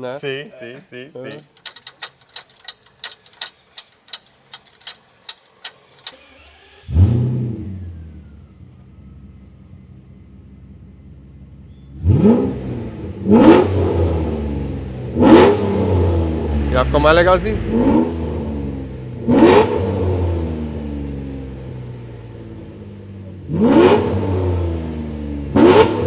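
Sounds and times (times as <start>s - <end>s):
sharp clicks: 1.3s - 6.2s, 16.7s - 17.9s
car engine starting and idling: 1.3s - 23.2s
engine revving: 5.3s - 8.5s, 11.9s - 21.8s, 23.5s - 26.0s.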